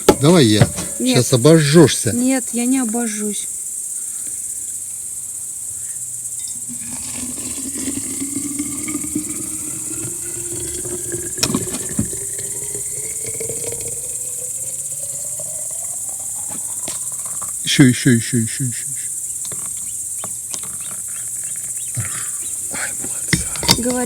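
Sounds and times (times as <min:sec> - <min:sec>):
water pouring into a cup: 0:06.5 - 0:18.0, 0:22.3 - 0:24.0
light clinks: 0:19.4 - 0:24.0.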